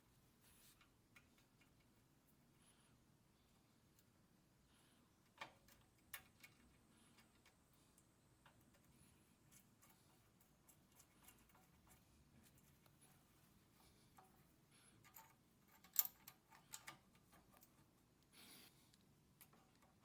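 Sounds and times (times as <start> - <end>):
faint small clicks and ticks: 0.4 - 2.4, 3.5 - 4.2, 5.0 - 20.0.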